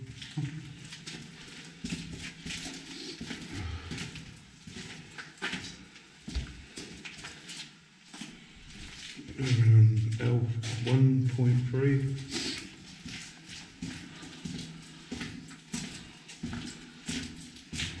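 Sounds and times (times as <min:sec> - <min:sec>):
footsteps on hard floor: 0:12.6 - 0:18.0.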